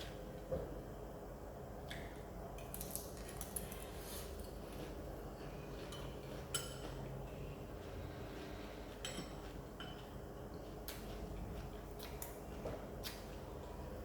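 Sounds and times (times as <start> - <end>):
low steady hum: 0.0 - 14.0
utensils clinking on a dish: 9.0 - 10.1.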